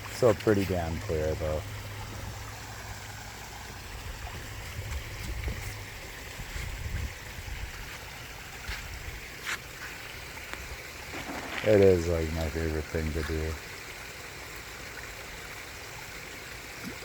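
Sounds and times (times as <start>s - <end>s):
low uneven rumble: 0.0s - 13.7s
small sharp splashes: 7.8s - 13.2s, 16.6s - 17.0s
waterfall splashing: 8.0s - 13.3s.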